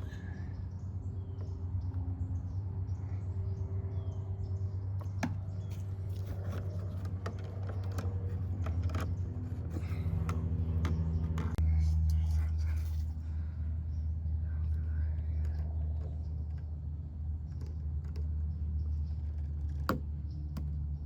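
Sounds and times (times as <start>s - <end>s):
steady low hum: 0.0s - 21.0s
plastic parts clicking and tapping: 5.0s - 11.6s.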